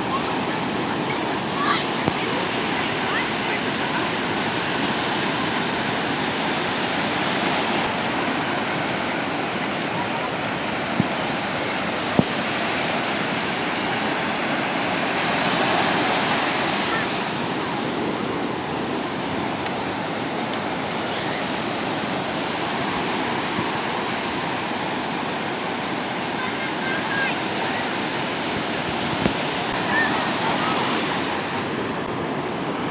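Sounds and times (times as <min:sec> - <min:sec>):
sea waves surf rush: 0:00.0 - 0:32.9.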